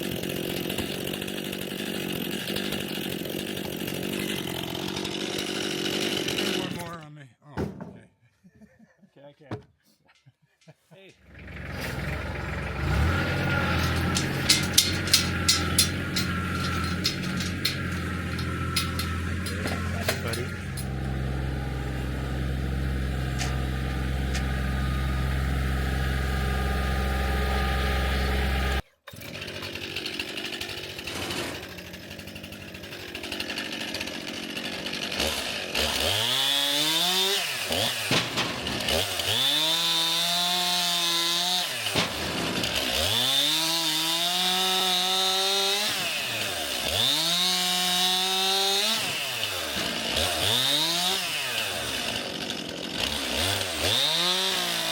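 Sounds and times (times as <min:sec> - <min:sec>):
chainsaw cutting logs: 0:00.0 - 0:07.1, 0:11.2 - 0:54.9
low engine hum: 0:11.3 - 0:28.8.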